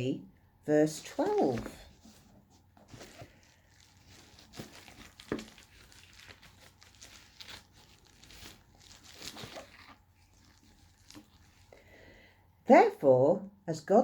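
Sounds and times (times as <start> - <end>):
paper rustling and crinkling: 1.0 - 11.8.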